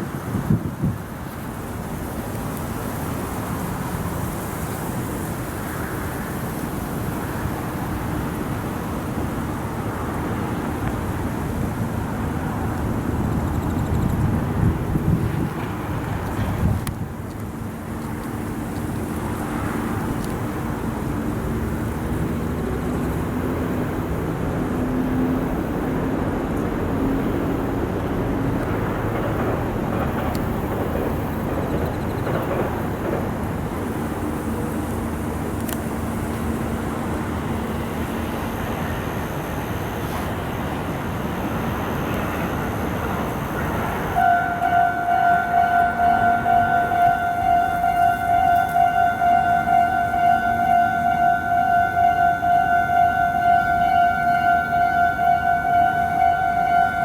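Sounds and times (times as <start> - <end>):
vehicles passing: 32.6 - 57.0
level-crossing bell ringing: 43.5 - 57.0.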